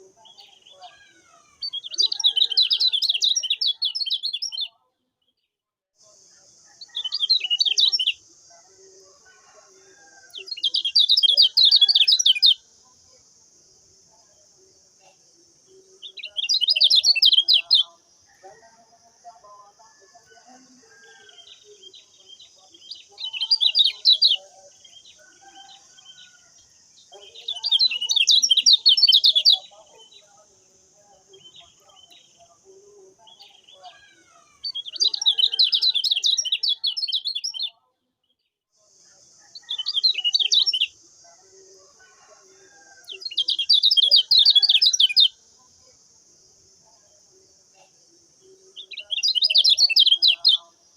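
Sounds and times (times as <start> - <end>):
bird twittering song: 0.0 - 5.4, 6.8 - 8.2, 9.9 - 12.6, 14.2 - 18.0, 20.5 - 38.5, 39.5 - 41.0, 42.6 - 45.4, 47.7 - 50.8
soft bird chirps: 0.0 - 5.5, 6.3 - 13.2, 14.1 - 18.8, 19.4 - 46.0, 46.9 - 50.8.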